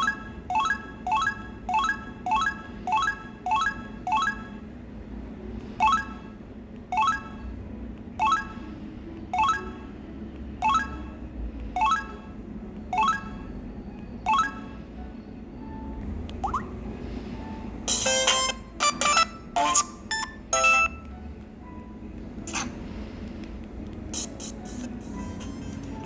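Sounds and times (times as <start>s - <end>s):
phone ringtone chime: 0.0s - 4.6s, 9.4s - 9.8s, 10.6s - 11.1s, 12.9s - 13.5s, 17.9s - 21.1s.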